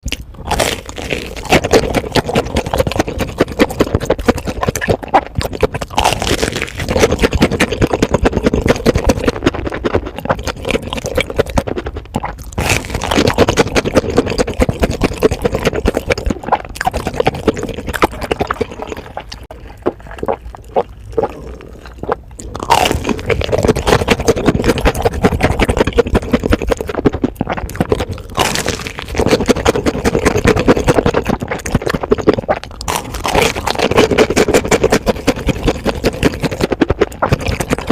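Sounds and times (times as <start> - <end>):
crunching and chewing food: 0.0 - 37.9.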